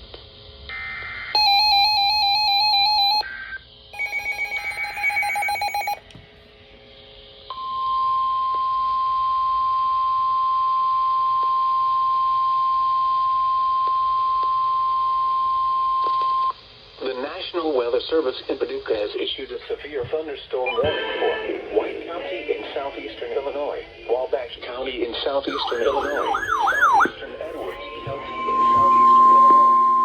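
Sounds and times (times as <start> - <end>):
steady high alarm tone: 1.4 - 3.2, 3.9 - 6.0, 25.5 - 30.0
warbling electronic data tones: 1.4 - 6.0, 25.4 - 30.0.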